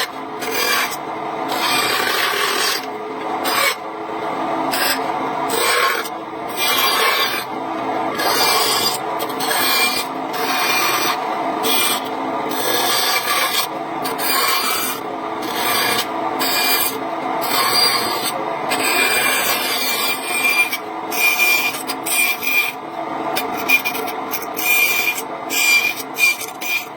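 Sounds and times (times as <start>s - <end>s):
wood being rasped by hand: 0.0s - 3.8s, 4.7s - 7.5s, 8.2s - 22.7s.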